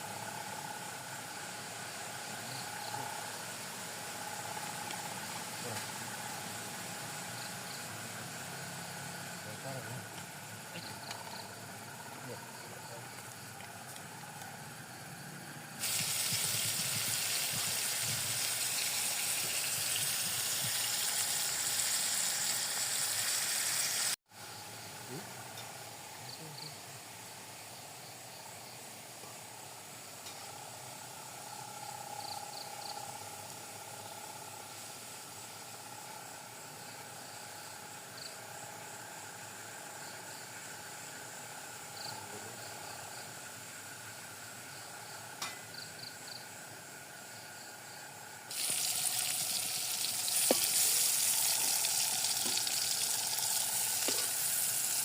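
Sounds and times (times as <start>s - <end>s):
food sizzling in hot oil: 15.8s - 24.2s, 48.5s - 55.0s.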